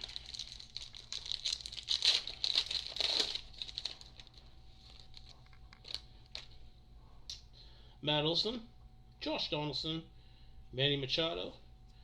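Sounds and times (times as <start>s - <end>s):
wrapper crinkling and tearing: 0.0s - 6.5s.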